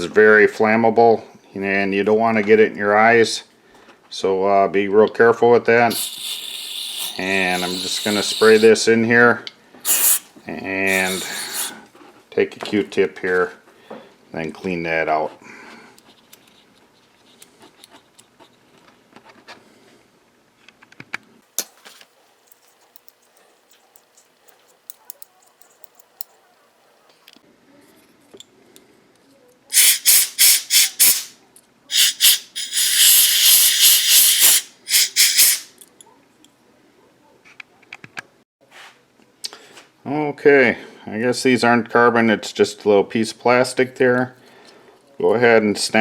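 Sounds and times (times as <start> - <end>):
aerosol can spraying: 5.9 - 8.8, 9.8 - 10.3, 10.9 - 11.8, 29.7 - 31.3, 31.9 - 35.7.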